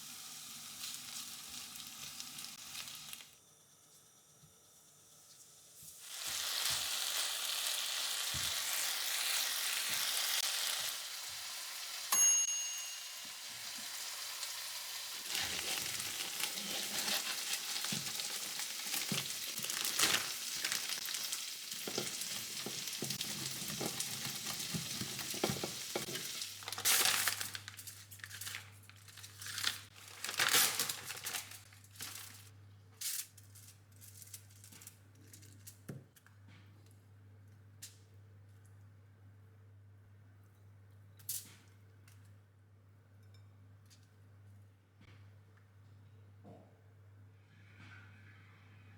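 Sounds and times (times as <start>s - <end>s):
food sizzling in frying pan: 0.0s - 3.4s, 5.5s - 12.2s, 12.8s - 27.5s
short ringing ping: 12.1s - 13.4s.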